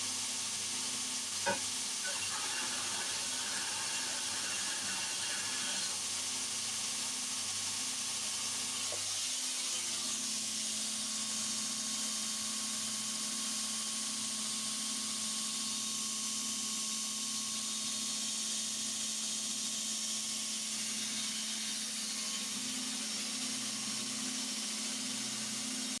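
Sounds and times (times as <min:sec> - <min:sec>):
power tool grinding: 0:01.5 - 0:06.0.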